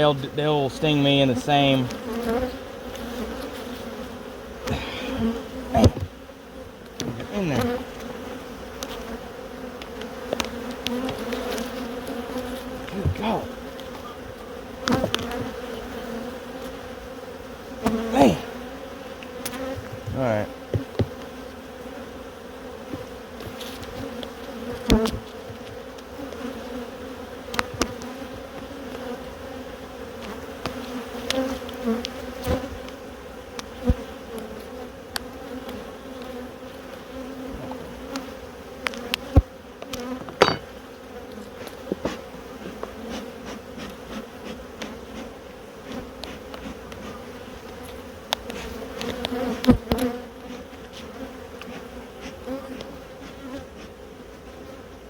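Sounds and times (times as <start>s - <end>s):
honeybees buzzing: 0.0s - 55.0s
clicks and knocks from hive handling: 4.6s - 16.7s, 17.8s - 21.5s, 22.8s - 26.8s, 27.4s - 29.2s, 30.1s - 36.4s, 37.1s - 54.0s.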